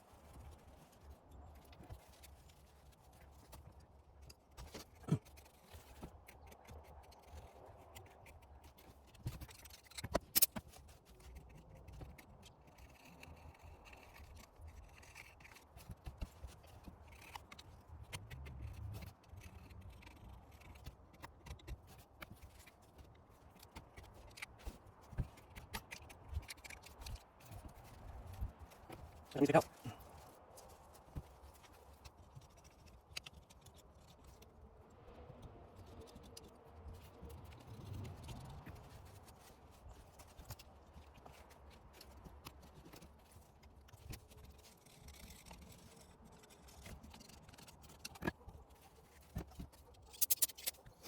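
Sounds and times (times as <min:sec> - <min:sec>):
scratching and scraping: 0:00.1 - 0:51.0.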